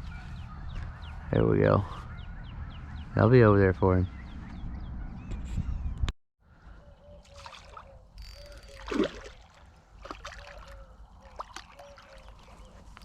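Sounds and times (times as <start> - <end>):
splash in pond water: 7.2 - 7.9, 8.8 - 12.5.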